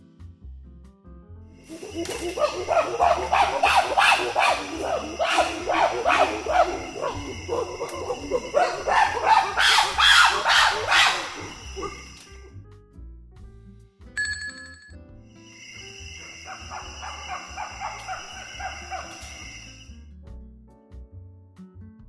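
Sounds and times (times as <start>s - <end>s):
background music: 0.0s - 22.0s
short animal calls: 1.7s - 12.4s, 16.2s - 19.8s.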